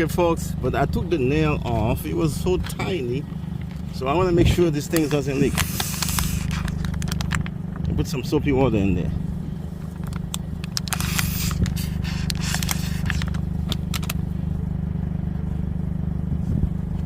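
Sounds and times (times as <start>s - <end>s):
steady low hum: 0.0s - 17.0s
clicks and scraping: 4.9s - 7.9s, 9.8s - 14.2s
short hisses: 5.5s - 6.6s, 11.0s - 13.2s.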